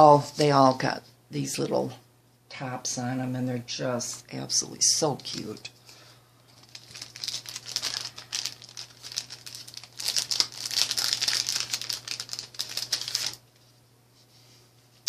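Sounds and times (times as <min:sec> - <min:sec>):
plastic bags crinkling: 0:06.5 - 0:13.5.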